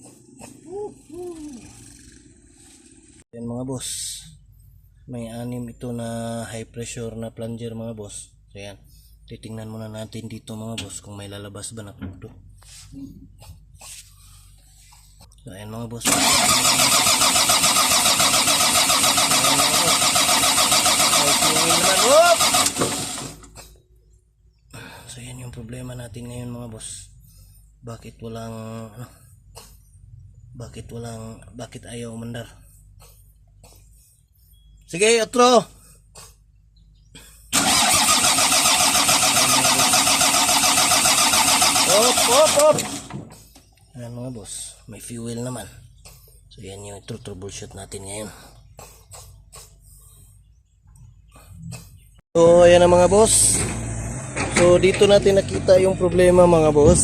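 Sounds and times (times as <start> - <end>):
diesel engine cranking: 0.0 - 3.2, 15.9 - 23.8, 37.5 - 43.8, 52.4 - 57.0.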